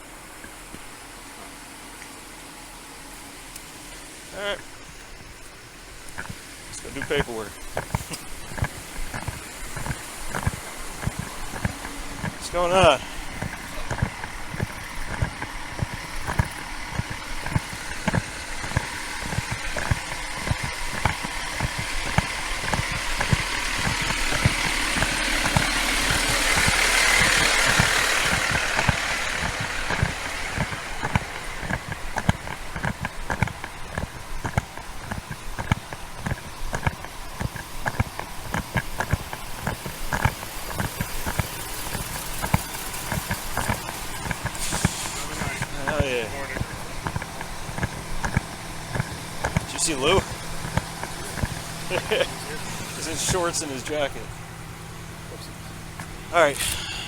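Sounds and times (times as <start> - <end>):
rhythmic footstep thumps: 3.1 - 57.0
vehicle passing: 6.2 - 35.0.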